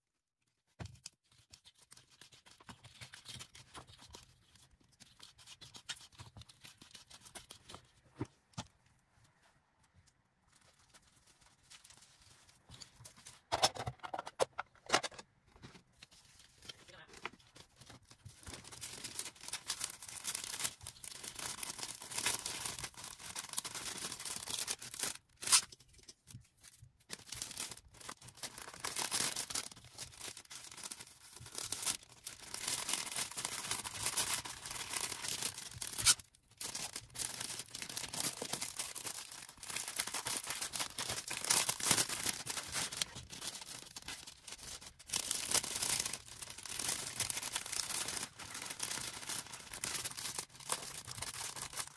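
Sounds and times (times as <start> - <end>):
packaging rustling and tearing: 15.7 - 51.9.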